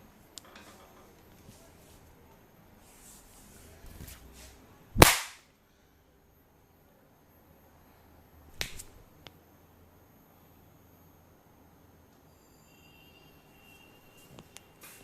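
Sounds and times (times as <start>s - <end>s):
hand smacks on head: 8.6s - 8.9s.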